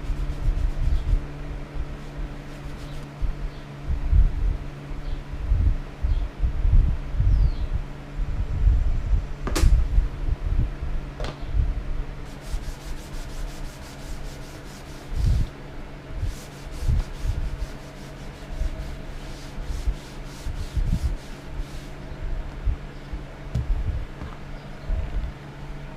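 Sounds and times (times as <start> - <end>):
hand rubbing strokes: 0.0 - 3.2, 12.2 - 22.2
steady low hum: 0.0 - 25.9.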